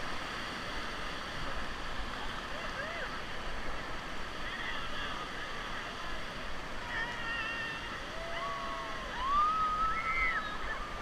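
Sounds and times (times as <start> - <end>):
whitewater river rushing: 0.0 - 11.0.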